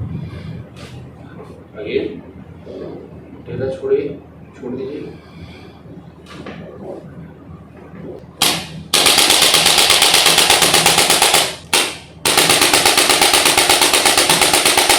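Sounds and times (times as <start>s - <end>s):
fast mechanical rattle: 8.4s - 14.9s.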